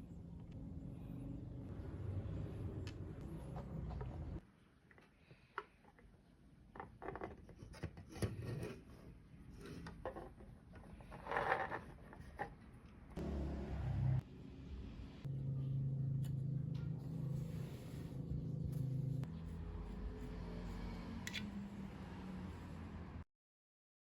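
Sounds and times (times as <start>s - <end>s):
steady low hum: 0.0s - 4.4s, 14.2s - 21.6s.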